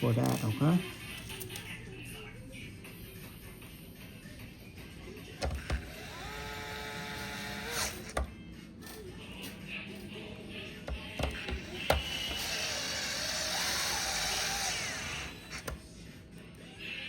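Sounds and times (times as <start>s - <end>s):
electric screwdriver running: 5.5s - 8.2s, 11.2s - 15.8s.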